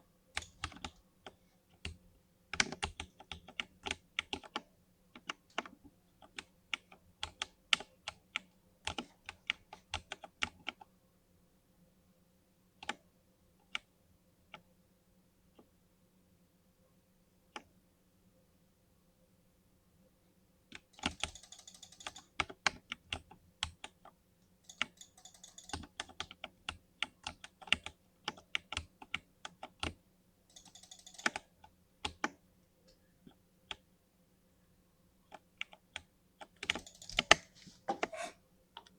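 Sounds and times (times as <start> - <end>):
keyboard typing: 0.4 - 10.8, 20.7 - 32.4, 35.3 - 38.9.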